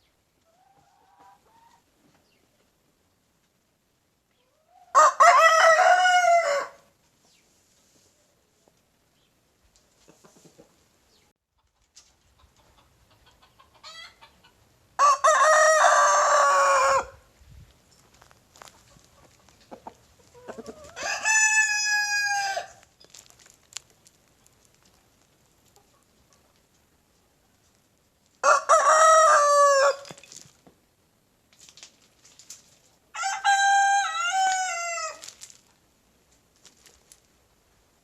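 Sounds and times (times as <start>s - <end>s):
rooster crowing: 4.9s - 6.8s, 15.0s - 17.2s, 20.5s - 22.8s, 28.4s - 30.0s, 33.1s - 35.2s.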